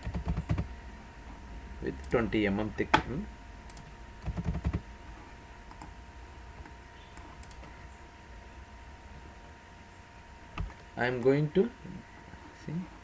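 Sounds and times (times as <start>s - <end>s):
keyboard and mouse clicks: 0.0s - 0.7s, 3.7s - 4.8s, 6.6s - 7.8s, 10.6s - 11.3s.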